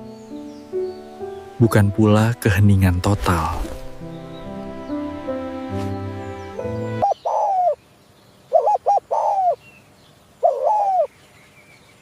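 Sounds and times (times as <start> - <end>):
background music: 0.0 - 7.2
dove cooing: 7.0 - 7.8, 8.5 - 9.6, 10.4 - 11.1.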